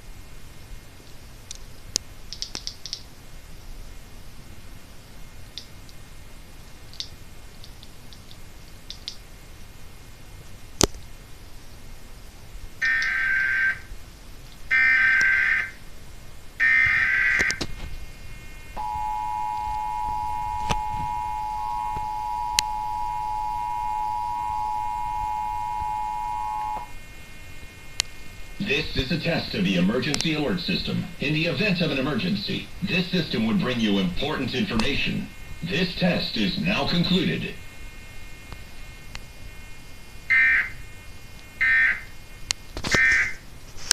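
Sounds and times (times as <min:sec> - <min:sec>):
steady dual tone attention signal: 0:18.1 - 0:42.1
digital data tone squawks: 0:18.8 - 0:26.9.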